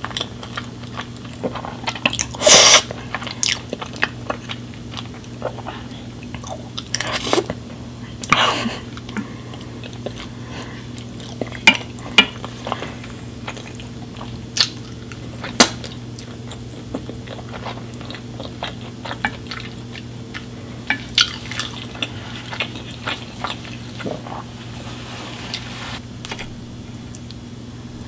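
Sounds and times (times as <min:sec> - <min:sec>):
chewing: 0:00.0 - 0:07.6, 0:08.2 - 0:24.7
low hum: 0:24.0 - 0:28.0.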